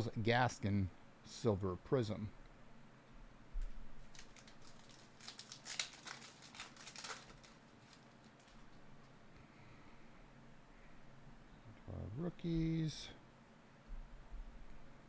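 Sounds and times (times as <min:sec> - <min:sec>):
foil wrapper tearing and crinkling: 0:04.0 - 0:09.0.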